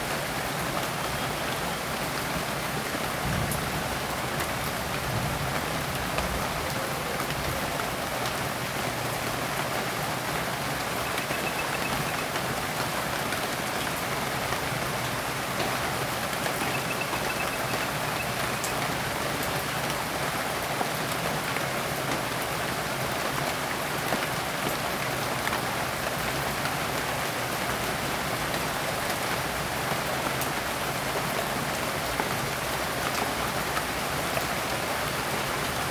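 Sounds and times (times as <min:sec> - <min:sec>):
rain pattering on leaves: 0:00.0 - 0:35.9
drips ticking: 0:10.3 - 0:14.5, 0:15.6 - 0:20.0.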